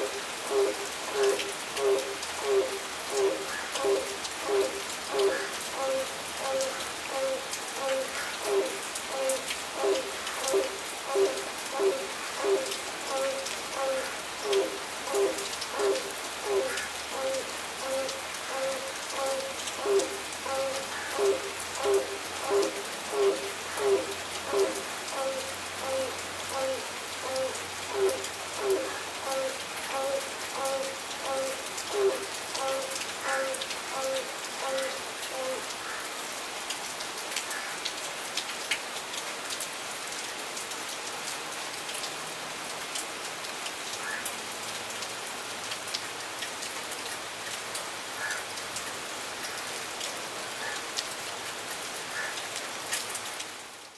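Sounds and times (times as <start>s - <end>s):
crane honking calls: 0.5s - 35.6s.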